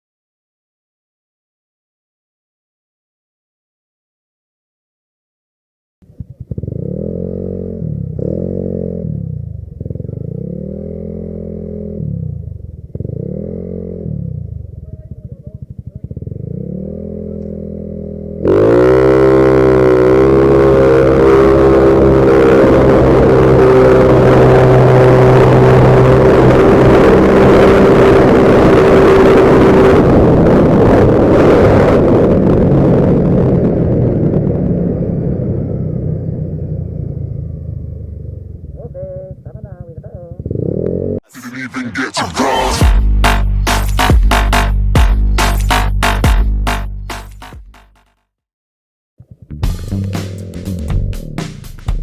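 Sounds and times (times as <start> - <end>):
scooter engine revving: 6.0 - 32.8, 34.4 - 47.5, 49.2 - 52.0
wind rushing over microphone: 24.0 - 37.5.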